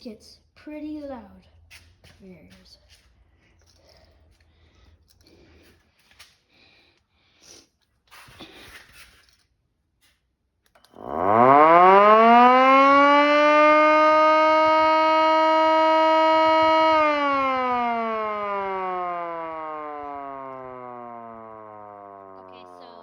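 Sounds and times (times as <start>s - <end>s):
air raid siren wailing: 11.0s - 23.0s.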